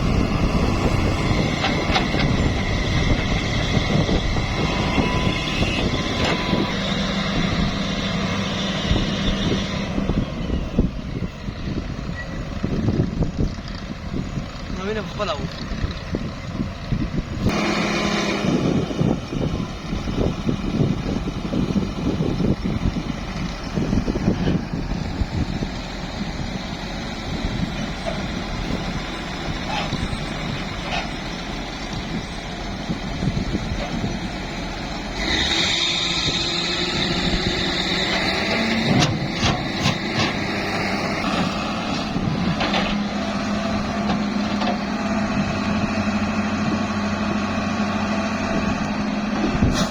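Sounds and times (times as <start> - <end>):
diesel engines running: 0.0 - 49.9
knocks and clanks: 38.1 - 40.5.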